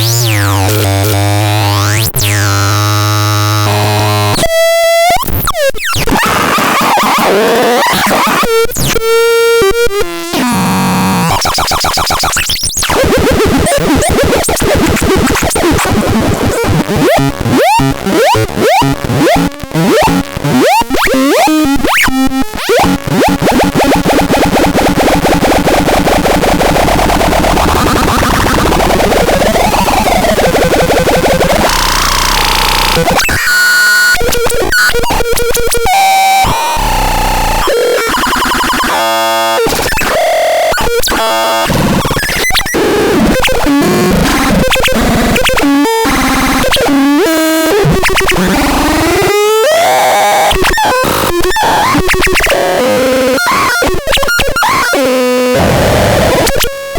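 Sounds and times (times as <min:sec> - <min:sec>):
glitchy synthesizer buzzing: 0:00.0 - 0:04.4, 0:22.8 - 0:56.9.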